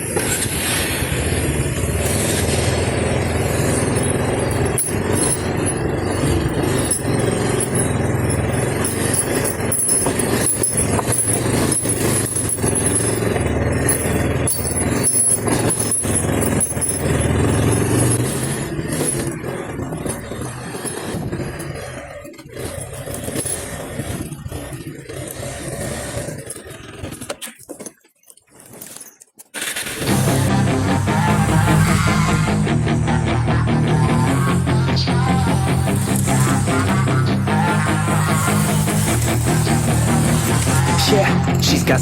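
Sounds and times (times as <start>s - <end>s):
vehicle knocks and jolts: 0.0s - 30.5s
vehicle engine and road rumble: 0.0s - 42.0s.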